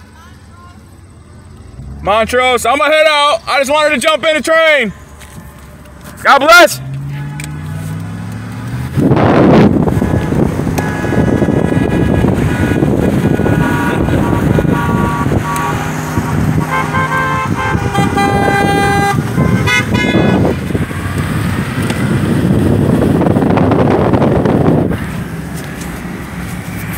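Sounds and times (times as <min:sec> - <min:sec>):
vehicle engine and road noise: 0:00.0 - 0:26.9
car horns honking: 0:01.7 - 0:21.0.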